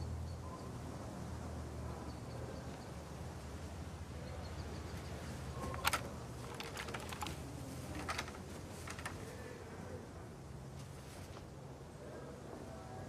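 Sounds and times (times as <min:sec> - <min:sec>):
sharp clicks and knocks: 0:05.6 - 0:09.2.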